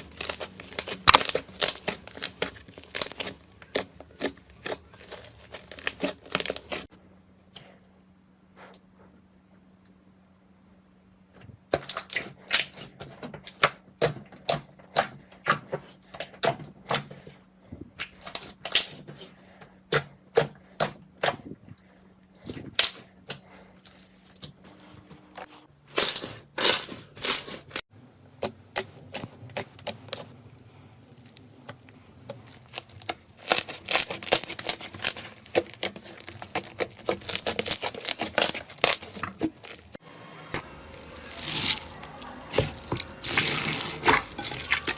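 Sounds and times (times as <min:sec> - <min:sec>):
slime popping and crackling: 0:00.0 - 0:06.9, 0:31.3 - 0:40.0.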